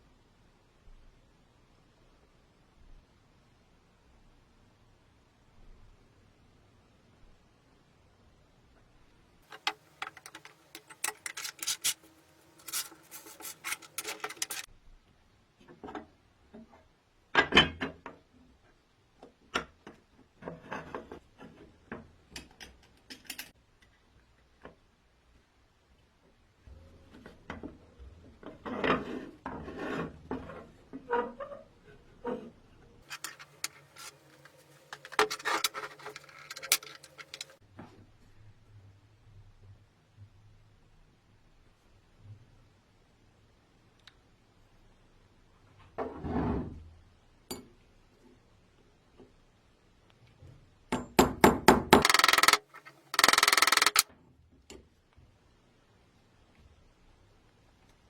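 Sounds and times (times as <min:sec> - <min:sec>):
fast rattling: 0:52.0 - 0:54.0
sharp clicks: 0:52.0 - 0:54.0.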